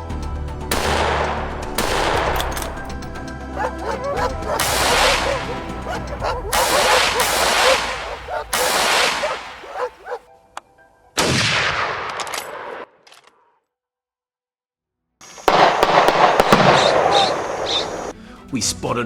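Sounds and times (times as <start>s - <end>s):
wavering yelps: 3.6s - 10.2s
loud bangs with echo: 6.5s - 9.6s.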